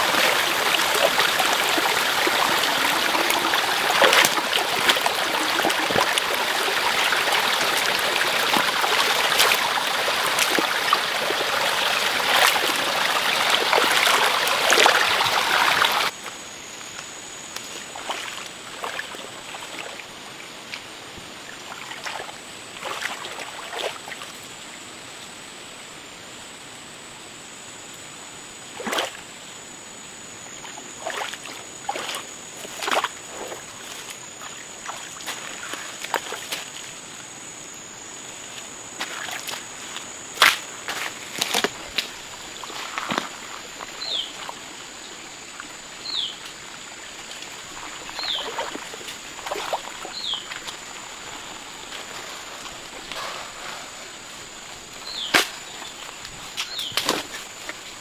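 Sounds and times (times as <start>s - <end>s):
running water: 0.0s - 24.6s, 30.5s - 58.0s
light knocks and scrapes: 50.6s - 57.8s.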